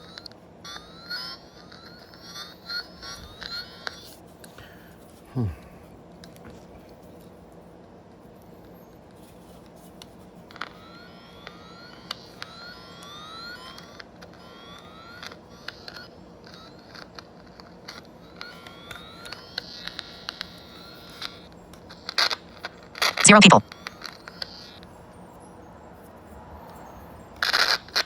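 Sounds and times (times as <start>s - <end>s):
electronic tester chirps: 23.2s - 23.6s.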